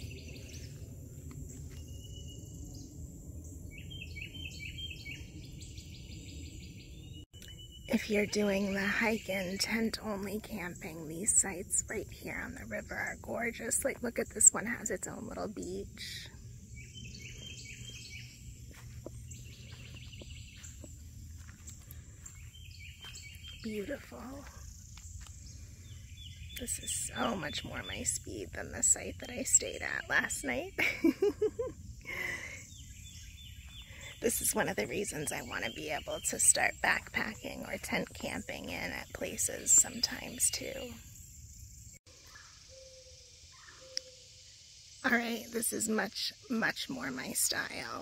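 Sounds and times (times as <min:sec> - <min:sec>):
low rumble: 0:00.0 - 0:07.3
bird chirping: 0:01.6 - 0:48.0.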